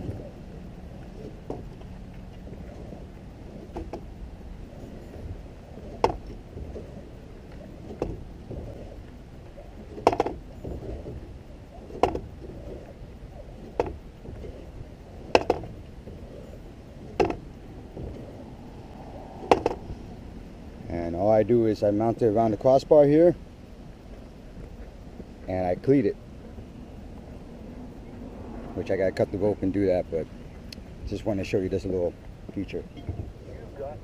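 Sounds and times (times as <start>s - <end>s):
low steady rumble: 0.0s - 34.0s
sharp knocks on a kayak: 6.0s - 6.4s, 10.0s - 10.4s, 11.9s - 12.3s, 13.7s - 14.0s, 15.3s - 15.7s, 19.4s - 19.8s.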